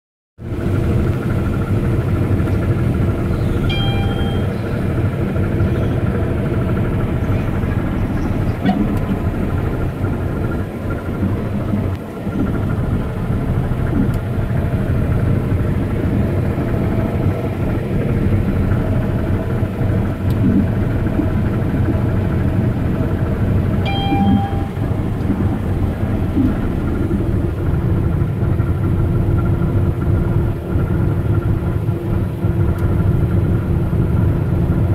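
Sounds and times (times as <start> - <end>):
heavy farm machinery running: 0.4 - 34.9
brief high tone: 3.6 - 4.6, 23.8 - 24.9.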